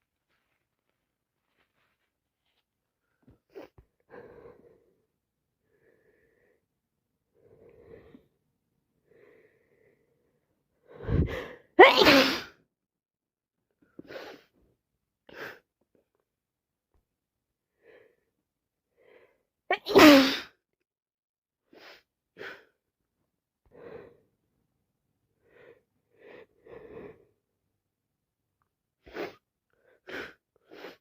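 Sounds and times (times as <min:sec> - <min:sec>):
woman breathing: 0:09.0 - 0:11.7
woman sneezing: 0:11.1 - 0:12.5, 0:19.7 - 0:20.5.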